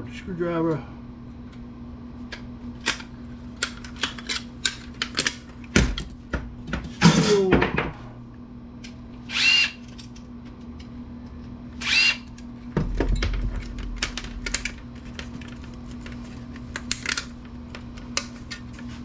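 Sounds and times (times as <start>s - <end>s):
power screwdriver running: 9.3s - 9.9s, 11.8s - 12.4s.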